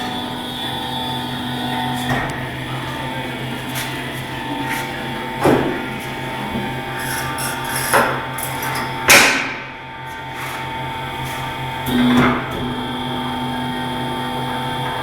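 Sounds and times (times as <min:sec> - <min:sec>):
tyre changer motor humming: 0:00.0 - 0:15.0
loud sharp knocks: 0:09.1 - 0:09.7.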